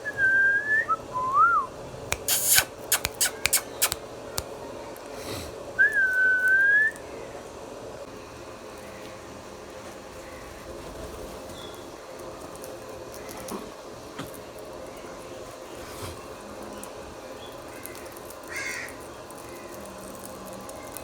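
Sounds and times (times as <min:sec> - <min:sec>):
steady background hum: 0:00.0 - 0:21.0
sharp clicks: 0:02.1 - 0:04.0
parrot squawk: 0:02.2 - 0:04.0.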